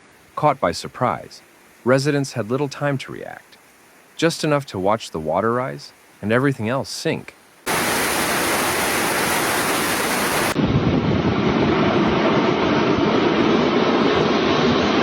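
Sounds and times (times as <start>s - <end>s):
water rushing: 0.0s - 10.6s.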